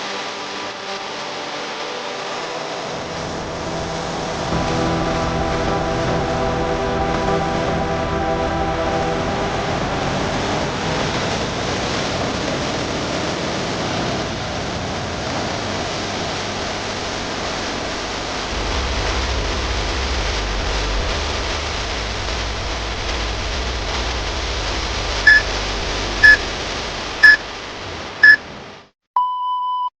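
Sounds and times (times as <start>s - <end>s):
low rumble: 2.8s - 28.8s
countdown timer beeps: 25.3s - 25.5s.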